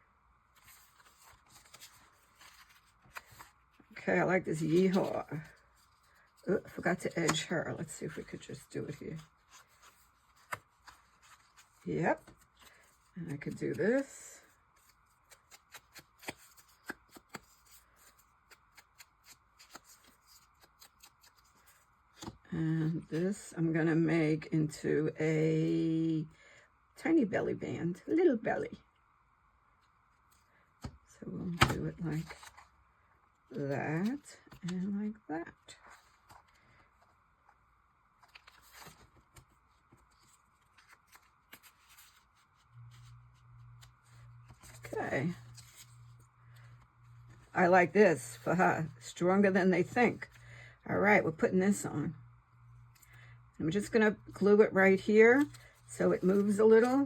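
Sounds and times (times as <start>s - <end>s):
low steady hum: 0.0s - 57.0s
paper rustling and crinkling: 0.5s - 3.9s, 4.5s - 22.4s, 38.2s - 47.5s.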